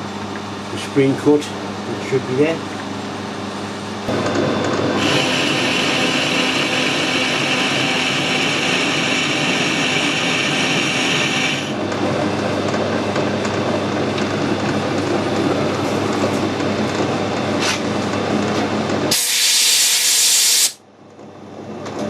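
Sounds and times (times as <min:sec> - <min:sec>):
metal lathe running: 0:04.1 - 0:18.4
high hiss of cutting tool: 0:19.1 - 0:20.8.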